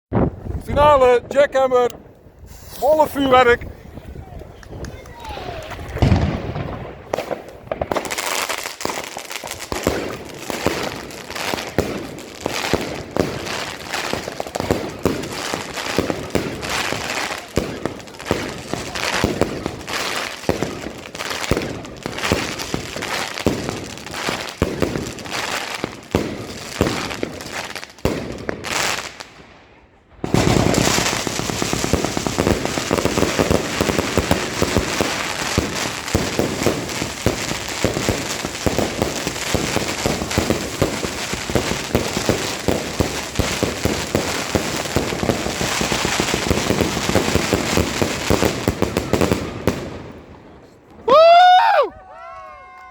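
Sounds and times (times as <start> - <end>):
firework battery shots: 5.7 - 13.5, 30.2 - 50.0.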